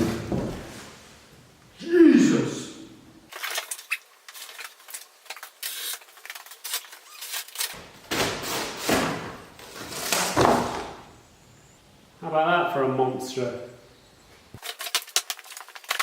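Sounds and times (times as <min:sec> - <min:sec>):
rustling and knocking handling noises: 0:00.0 - 0:01.2.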